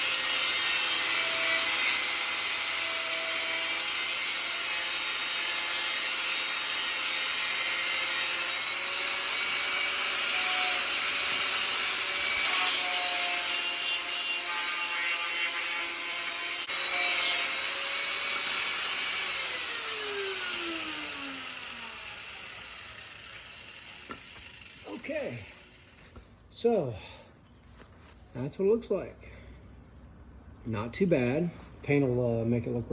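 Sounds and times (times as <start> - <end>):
power sander whirring on metal: 0.0 - 26.2.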